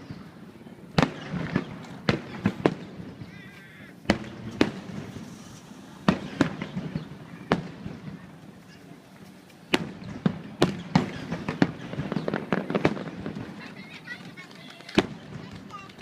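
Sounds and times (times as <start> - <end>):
crackling pops: 0.9 - 16.0
firework shells bursting: 4.0 - 8.5, 9.2 - 16.0.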